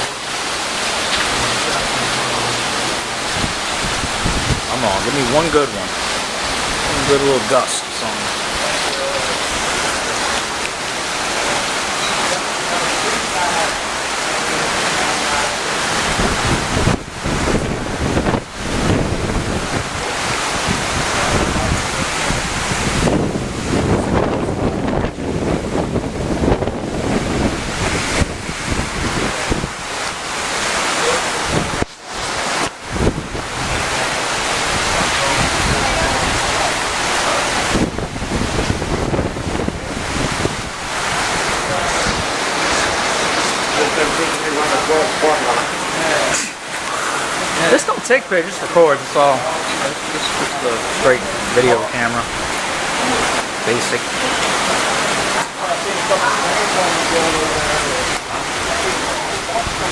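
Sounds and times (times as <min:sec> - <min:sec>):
gusty wind buffeting microphone: 0:00.0 - 0:11.0, 0:15.9 - 0:44.8.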